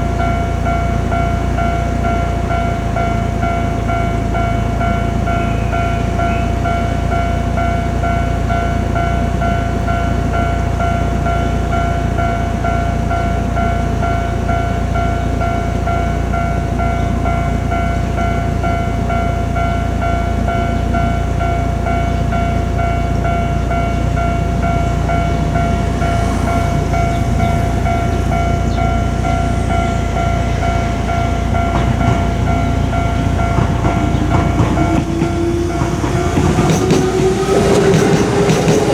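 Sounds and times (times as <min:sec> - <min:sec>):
level crossing warning bell: 0:00.0 - 0:38.9
train approaching: 0:00.0 - 0:38.9
low rumble: 0:21.4 - 0:38.9.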